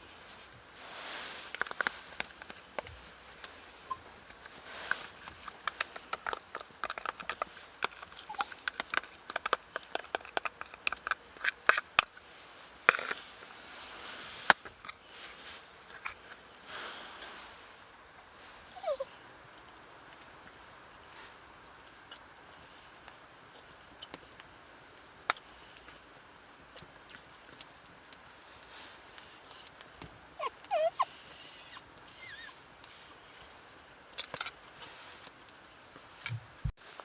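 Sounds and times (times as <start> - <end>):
dog whining: 8.2 - 8.6, 18.7 - 19.2, 30.4 - 33.3
small dog sniffing: 18.7 - 19.1, 30.4 - 33.5.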